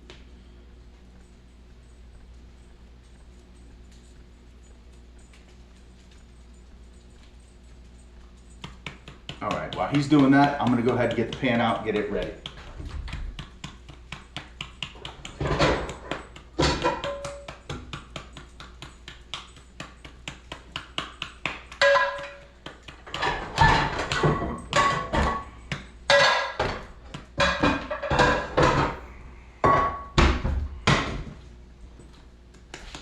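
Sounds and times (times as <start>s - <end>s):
frying pan metal clanks: 15.4s - 17.6s, 21.8s - 22.5s.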